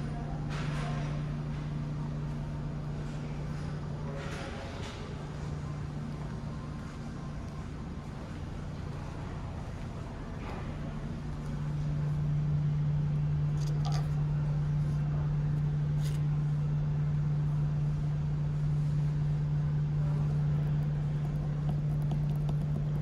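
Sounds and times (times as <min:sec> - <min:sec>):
ship machinery humming: 0:04.7 - 0:18.1, 0:19.8 - 0:23.0.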